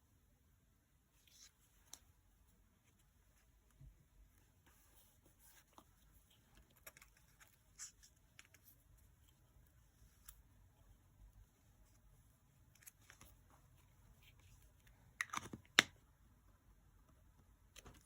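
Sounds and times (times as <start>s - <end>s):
low room tone hum: 0.0s - 18.0s
paper and stationery rustling: 4.4s - 10.5s.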